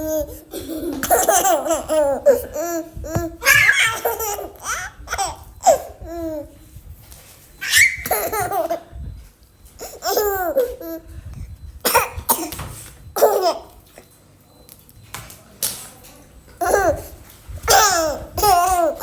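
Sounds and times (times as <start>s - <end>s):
baby laughing: 0.0s - 6.4s, 7.6s - 8.8s, 9.8s - 11.0s, 13.2s - 13.7s, 17.7s - 19.0s
baby coughing: 9.8s - 10.7s, 11.8s - 12.6s, 13.2s - 13.7s, 17.7s - 19.0s.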